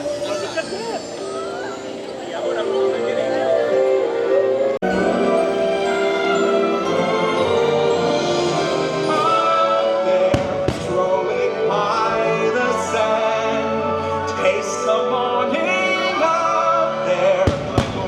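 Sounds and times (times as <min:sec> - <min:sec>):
orchestral music with singing: 0:00.0 - 0:18.0
firework bangs: 0:10.3 - 0:11.2, 0:17.4 - 0:18.0.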